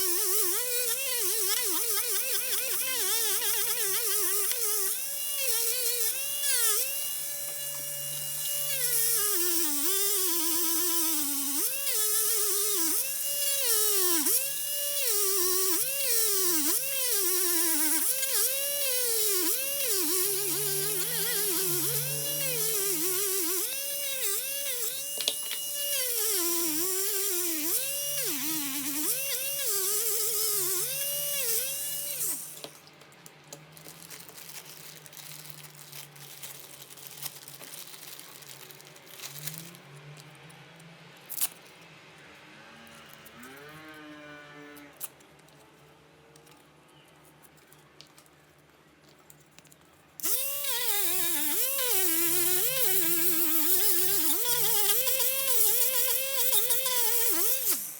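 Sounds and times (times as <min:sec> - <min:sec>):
electric rotary tool running: 0:00.0 - 0:32.7, 0:50.2 - 0:57.9.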